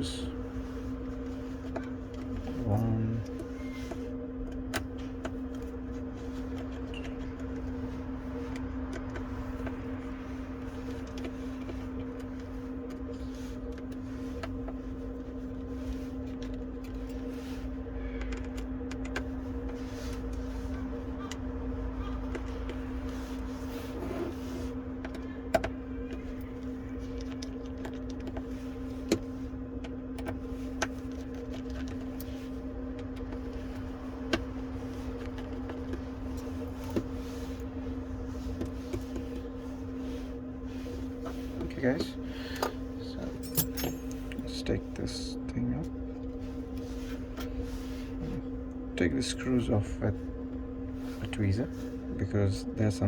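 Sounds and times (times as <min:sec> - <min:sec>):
low electrical hum: 0:00.0 - 0:53.0
tools clicking and tapping on screws: 0:43.4 - 0:44.4.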